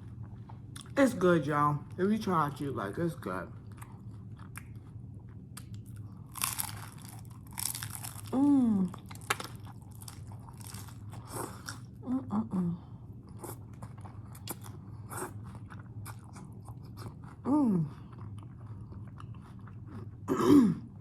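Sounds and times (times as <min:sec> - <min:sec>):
crunchy taco chewing: 0:02.5 - 0:11.9, 0:13.2 - 0:20.4
person humming with enjoyment: 0:08.3 - 0:08.9.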